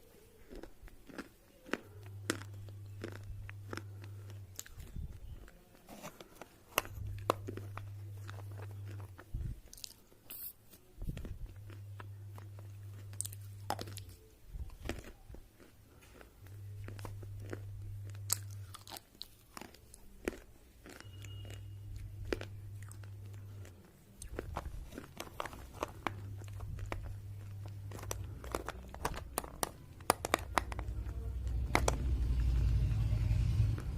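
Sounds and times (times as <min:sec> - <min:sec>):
chewing crunches: 0:00.0 - 0:32.8
low hum: 0:21.1 - 0:33.9
low rumble: 0:30.6 - 0:33.9.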